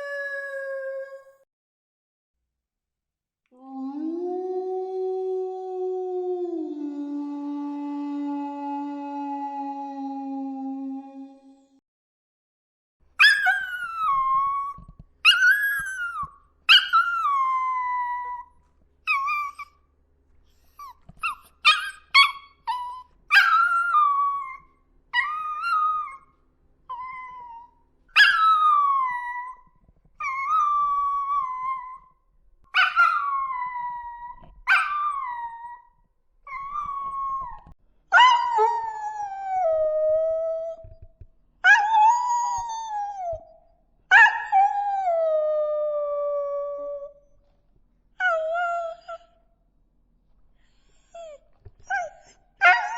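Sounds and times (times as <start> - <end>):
puppy yips: 13.2 - 18.5, 19.1 - 19.8, 20.5 - 26.3, 26.9 - 29.6, 32.7 - 35.9, 51.1 - 52.9
puppies howling: 32.8 - 35.8.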